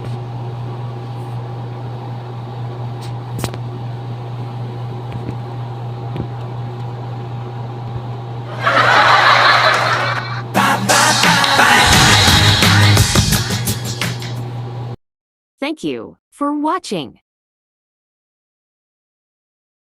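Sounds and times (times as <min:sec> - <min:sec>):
motor hum with faint whine: 0:00.0 - 0:10.6
rushing noise effect: 0:11.6 - 0:13.5.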